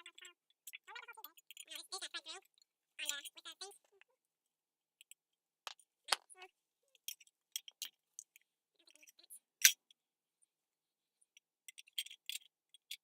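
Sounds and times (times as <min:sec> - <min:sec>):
small metal parts clicking and clanking: 0:00.0 - 0:01.8, 0:06.9 - 0:10.0, 0:11.3 - 0:13.0.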